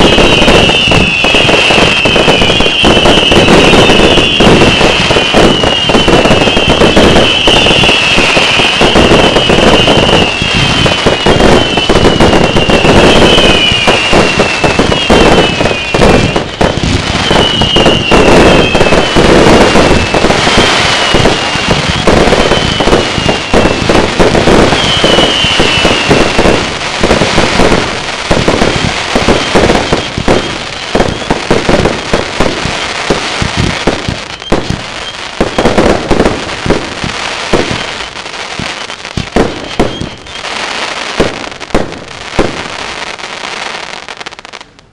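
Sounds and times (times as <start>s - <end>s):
short falling whistles: 0.0s - 16.4s, 17.0s - 19.1s, 24.6s - 26.2s, 39.5s - 40.6s
fireworks shots and bursts: 0.0s - 44.9s.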